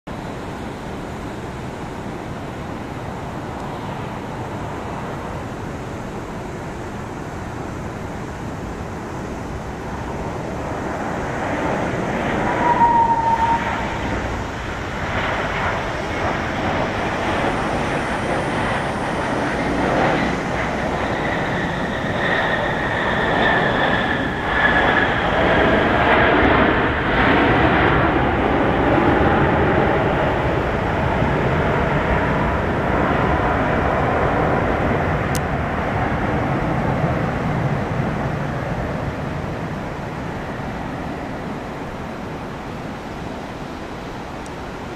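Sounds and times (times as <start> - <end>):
jet engines roaring: 0.1 - 44.9
thin engine whine: 7.0 - 35.4.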